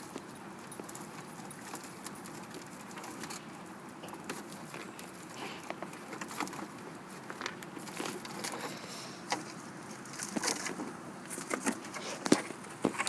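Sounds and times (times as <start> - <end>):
plastic and cardboard crinkling: 0.0 - 13.0.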